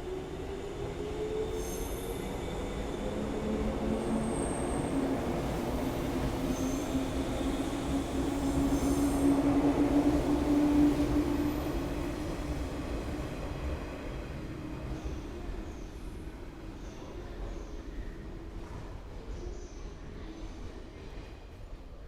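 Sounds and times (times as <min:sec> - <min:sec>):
train wheel squeal: 0:01.5 - 0:02.9.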